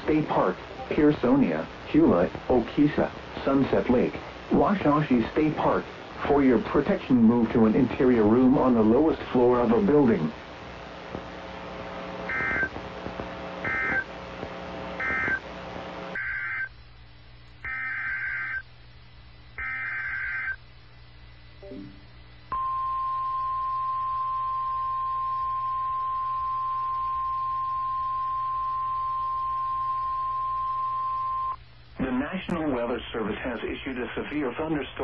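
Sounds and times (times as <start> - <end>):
buzzy data bursts: 8.3 - 16.7
steady warning alarm tone: 12.3 - 12.8, 13.6 - 14.1, 15.0 - 15.4, 16.1 - 16.7, 17.6 - 18.6, 19.6 - 20.6.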